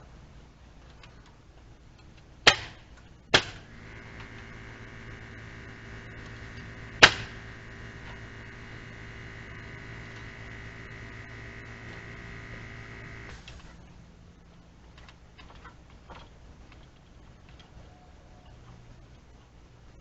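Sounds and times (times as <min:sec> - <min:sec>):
pneumatic nail gun firing: 0:02.5 - 0:13.8
steady motor hum: 0:03.4 - 0:14.6.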